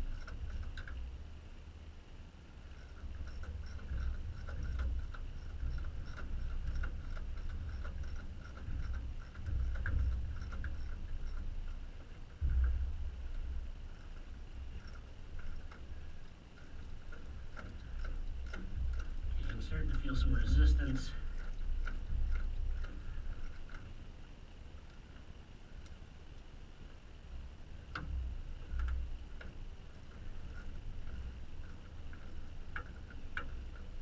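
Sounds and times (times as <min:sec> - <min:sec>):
ratchet clicking: 0:02.7 - 0:12.6, 0:13.3 - 0:24.0.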